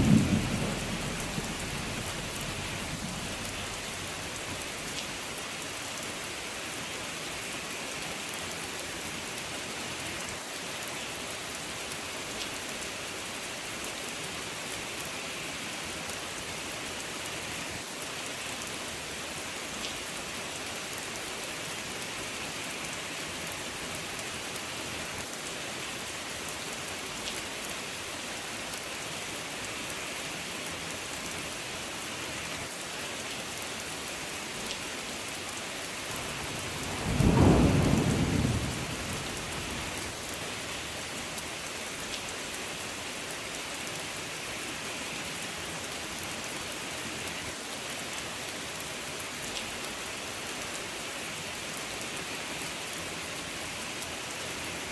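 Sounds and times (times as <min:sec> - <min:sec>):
thunder rumble: 0:00.0 - 0:04.1, 0:36.3 - 0:40.0
steady rain falling: 0:00.0 - 0:54.9.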